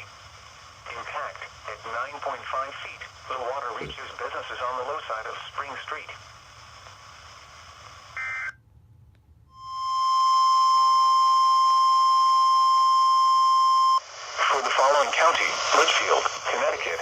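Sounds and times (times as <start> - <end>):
electronic warning alarm tone: 9.5 - 14.1.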